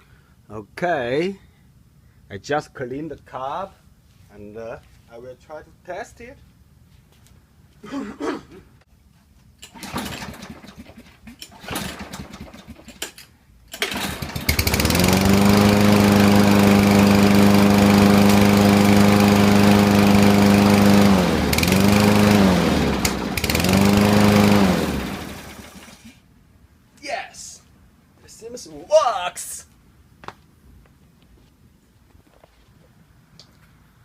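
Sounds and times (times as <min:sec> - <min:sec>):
lawn mower engine running: 0:09.6 - 0:13.0, 0:13.7 - 0:26.1.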